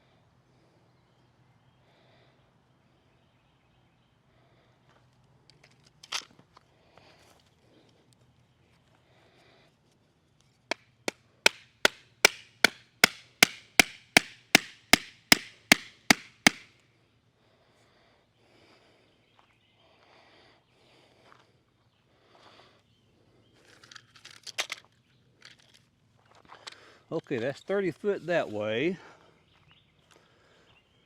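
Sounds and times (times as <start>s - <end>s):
hammer striking wood: 11.5s - 16.6s.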